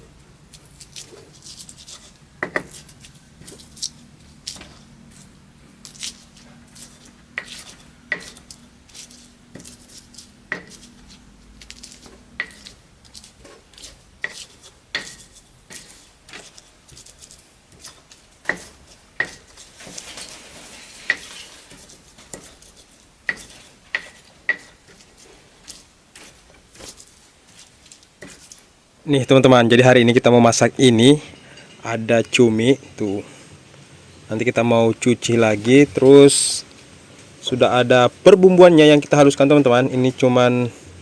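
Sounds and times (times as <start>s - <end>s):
soft rustle: 0.0s - 29.6s, 30.3s - 41.0s
kitchenware clinking and knocking: 31.2s - 31.9s.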